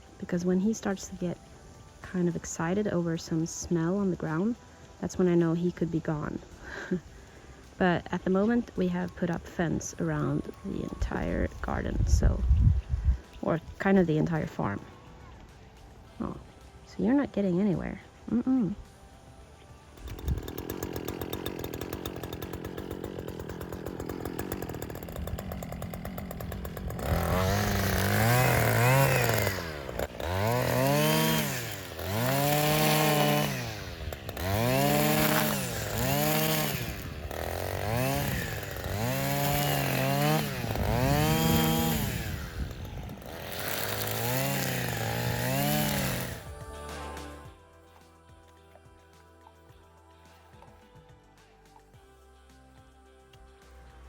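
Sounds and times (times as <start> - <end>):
small engine revving: 20.0 - 47.5.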